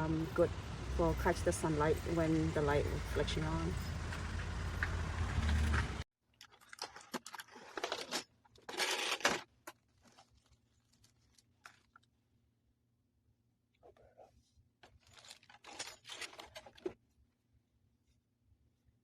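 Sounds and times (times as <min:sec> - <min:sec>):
handling clicks and rustles: 0:00.1 - 0:12.0, 0:14.8 - 0:17.0
crinkling rustle: 0:03.7 - 0:12.2, 0:14.8 - 0:17.0.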